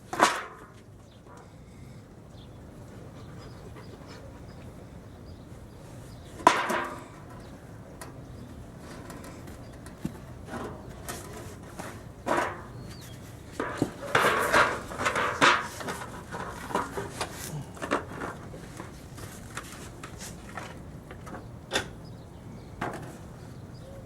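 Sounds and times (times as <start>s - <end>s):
knocks and clatter of handling: 6.4s - 22.0s, 22.8s - 23.3s.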